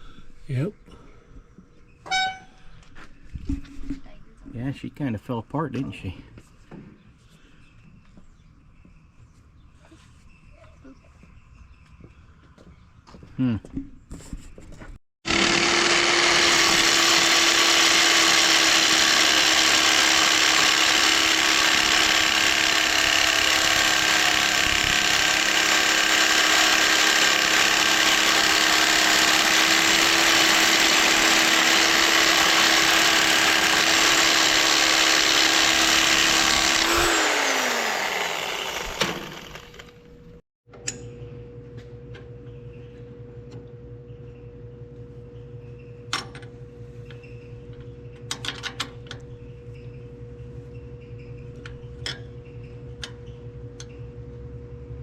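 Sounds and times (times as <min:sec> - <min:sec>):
power tool motor running: 0:15.2 - 0:40.3.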